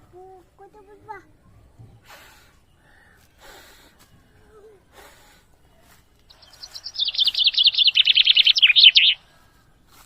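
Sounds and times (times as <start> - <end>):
songbird trilling: 6.3 - 9.2.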